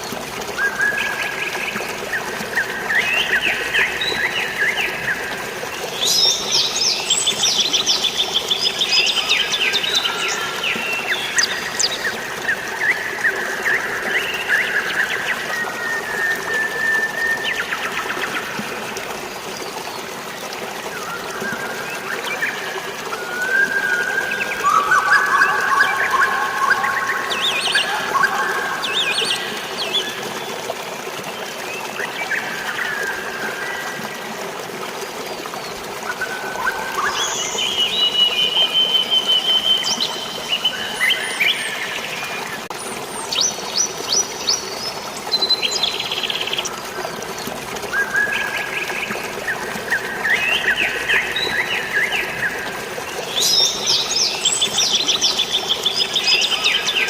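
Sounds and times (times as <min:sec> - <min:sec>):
flowing water: 0:00.0 - 0:57.0
birds chirping and trilling: 0:23.5 - 0:30.4.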